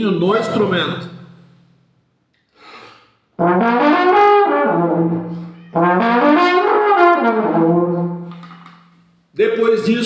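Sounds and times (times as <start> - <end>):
short breath: 2.5 - 3.2
trombone slurring up and down: 3.4 - 8.3.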